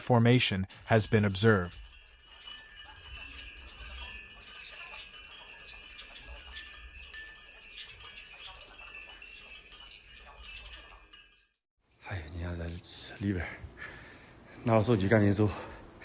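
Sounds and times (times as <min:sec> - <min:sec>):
small objects tinkling and clinking: 0:00.7 - 0:11.6.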